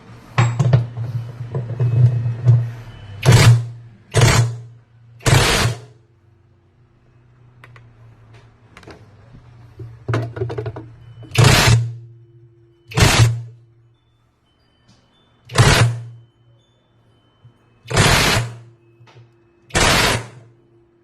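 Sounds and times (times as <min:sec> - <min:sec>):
motor-driven machine bursts: 0:03.2 - 0:05.9, 0:11.3 - 0:12.0, 0:12.9 - 0:13.5, 0:15.5 - 0:16.1, 0:17.9 - 0:18.7, 0:19.7 - 0:20.4.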